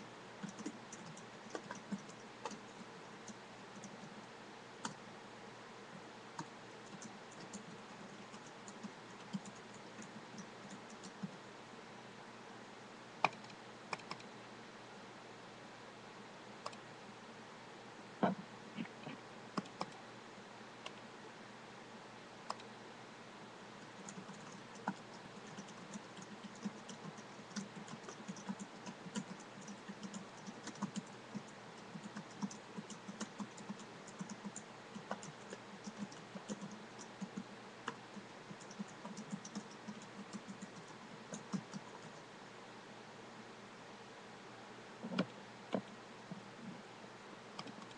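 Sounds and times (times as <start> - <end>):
typing on computer keyboard: 0.4 - 4.1, 6.4 - 11.4, 13.2 - 14.3, 19.6 - 20.0, 23.9 - 42.2, 47.6 - 47.9.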